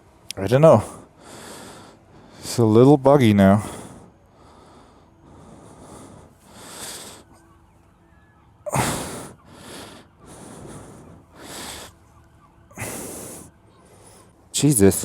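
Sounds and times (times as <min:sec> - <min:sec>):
person breathing out hard: 0:00.9 - 0:02.5, 0:03.6 - 0:07.4, 0:08.7 - 0:14.4.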